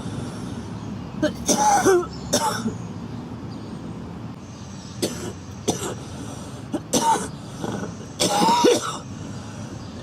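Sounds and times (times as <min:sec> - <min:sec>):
girl coughing: 0:01.5 - 0:02.7, 0:05.0 - 0:06.0, 0:06.8 - 0:07.3, 0:08.2 - 0:09.0.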